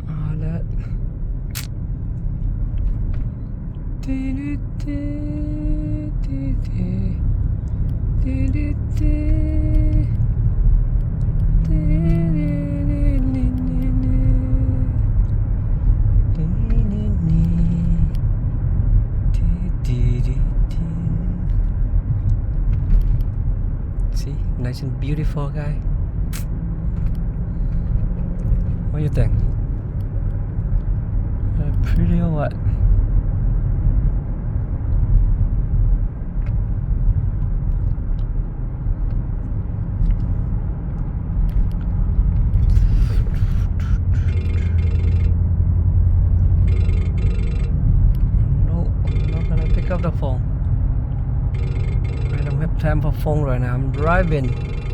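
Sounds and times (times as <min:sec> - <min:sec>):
car cabin road rumble: 0:00.0 - 0:54.9
faint ticks: 0:46.6 - 0:48.4.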